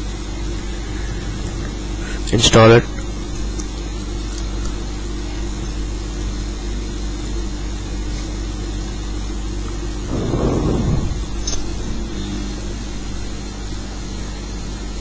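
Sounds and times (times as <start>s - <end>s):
low hum: 10.0s - 13.3s.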